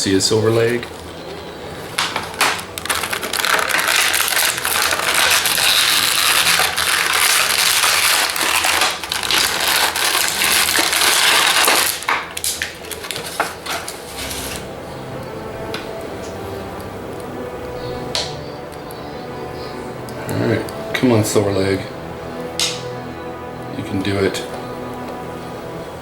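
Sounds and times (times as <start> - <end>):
plastic packaging crinkling: 0.5 - 14.7
clicks and rustles: 0.8 - 14.6.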